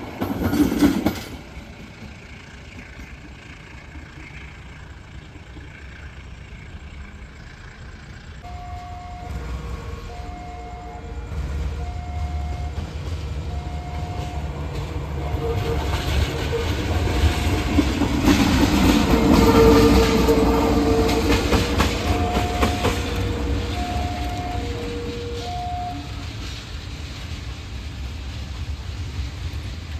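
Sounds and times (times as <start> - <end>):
train passing with wheel clatter: 0.0 - 29.9
short warning beeps: 8.4 - 11.2, 11.8 - 12.8, 13.5 - 14.6, 22.0 - 26.2
locomotive horn blast: 8.4 - 26.3.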